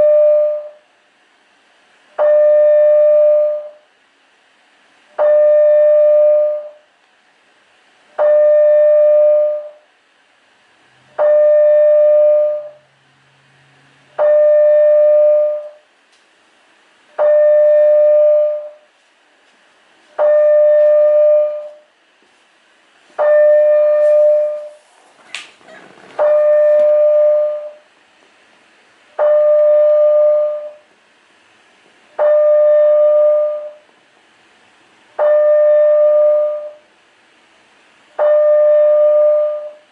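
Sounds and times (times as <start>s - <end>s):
fire alarm sounder tone: 0.0s - 0.8s, 2.1s - 3.9s, 5.1s - 6.9s, 8.1s - 9.9s, 11.2s - 12.9s, 14.2s - 15.9s, 17.2s - 18.9s, 20.2s - 21.9s, 23.2s - 24.8s, 26.2s - 27.9s, 29.2s - 30.9s, 32.2s - 33.9s, 35.2s - 36.9s, 38.2s - 39.9s.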